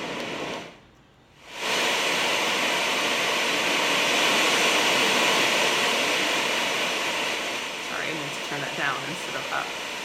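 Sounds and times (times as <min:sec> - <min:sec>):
white noise hiss from speaker: 0:00.0 - 0:10.0.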